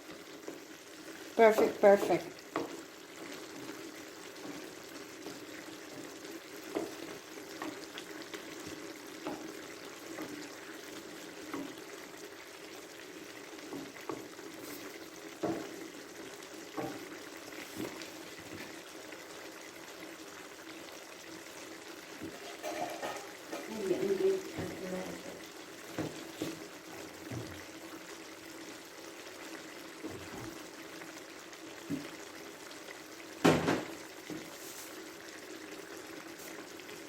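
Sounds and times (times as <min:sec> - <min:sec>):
stir fry sizzling in a pan: 0:00.0 - 0:37.0
spatula knocking against pan: 0:22.3 - 0:23.7.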